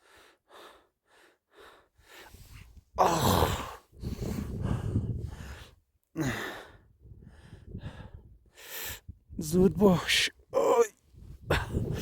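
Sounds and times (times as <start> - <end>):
person breathing hard: 0.0 - 9.1.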